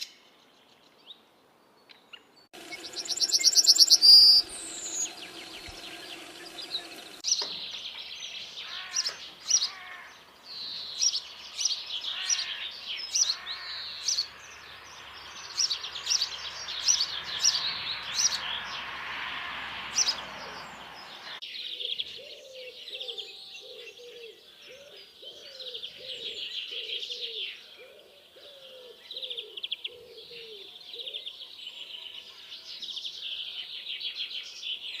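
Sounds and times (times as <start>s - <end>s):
songbirds chirping and singing: 0.0s - 35.0s
lower repeated bird call: 2.6s - 7.3s.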